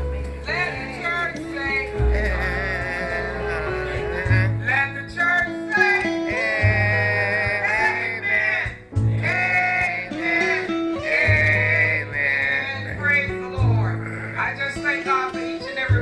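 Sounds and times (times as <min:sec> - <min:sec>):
low bass notes: 0:00.0 - 0:14.8
guitar accompaniment: 0:00.0 - 0:16.0
person singing: 0:01.9 - 0:04.6, 0:05.8 - 0:13.0.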